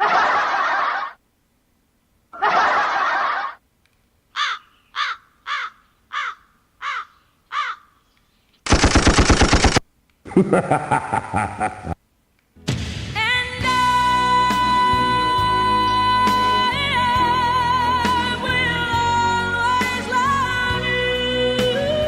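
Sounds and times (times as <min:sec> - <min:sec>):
fast rattling burst: 0:08.7 - 0:09.8.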